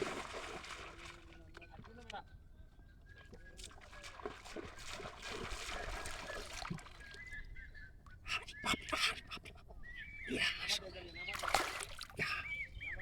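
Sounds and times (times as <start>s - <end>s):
water splashing from struggling fish: 0.0s - 1.2s, 11.3s - 12.2s.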